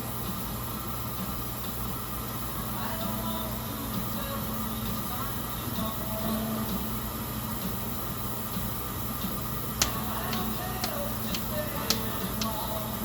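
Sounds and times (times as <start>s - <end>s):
washing machine humming: 0.0s - 13.0s
sharp clicks: 9.8s - 12.6s.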